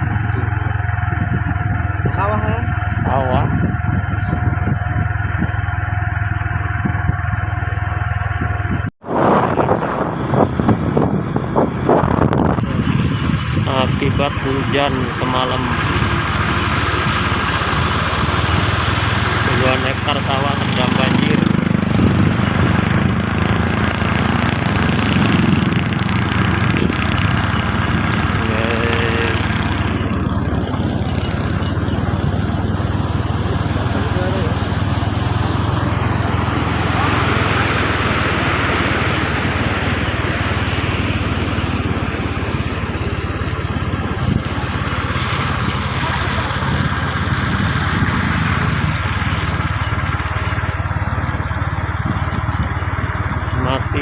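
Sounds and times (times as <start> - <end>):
motorcycle engine running: 0.0 - 54.0
rough rushing noise: 0.0 - 54.0.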